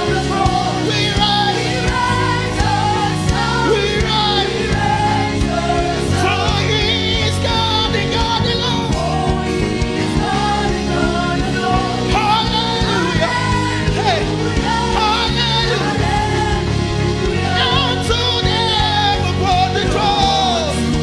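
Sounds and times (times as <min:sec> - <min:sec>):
gospel singing: 0:00.0 - 0:21.0
sustained instrumental backing: 0:00.0 - 0:21.0.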